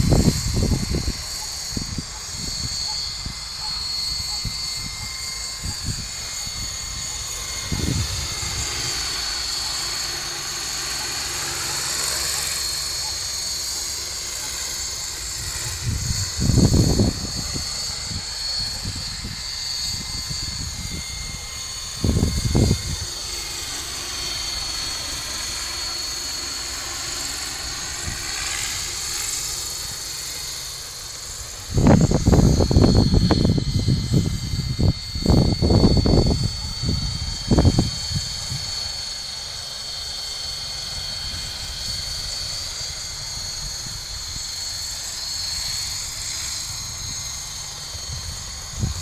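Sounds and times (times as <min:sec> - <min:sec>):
wind rumble on microphone: 0:00.0 - 0:03.4, 0:04.2 - 0:09.0, 0:15.3 - 0:23.1, 0:31.6 - 0:39.0, 0:41.0 - 0:44.5, 0:46.6 - 0:49.0
model helicopter rotor whine: 0:00.0 - 0:49.0.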